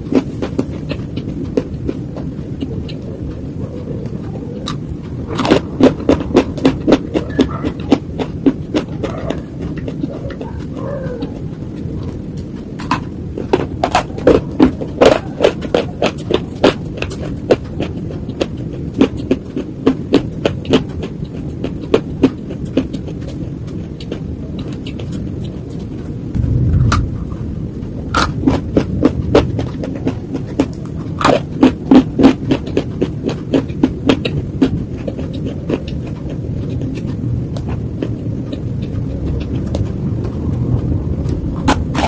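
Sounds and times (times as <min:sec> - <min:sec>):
slate crunching and cracking: 0:04.0 - 0:42.0
low rumble: 0:26.1 - 0:33.3, 0:34.0 - 0:42.0
low thump: 0:26.4 - 0:27.4.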